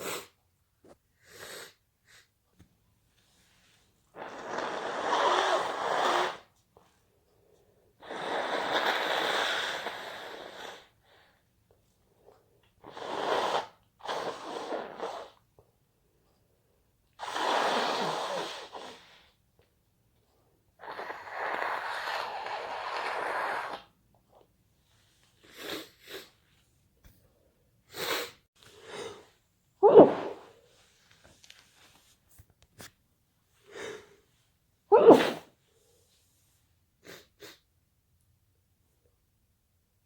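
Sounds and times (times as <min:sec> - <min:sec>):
person sneezing: 0:29.8 - 0:30.6, 0:34.9 - 0:35.6.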